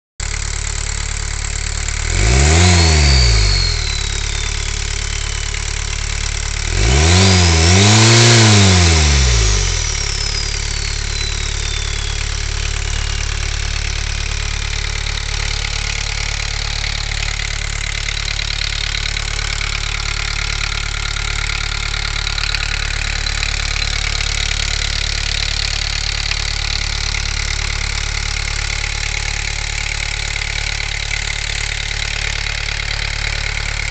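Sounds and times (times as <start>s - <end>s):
diesel engine idling and revving: 0.2s - 33.9s
turbo whistle: 2.6s - 6.0s, 7.8s - 13.6s.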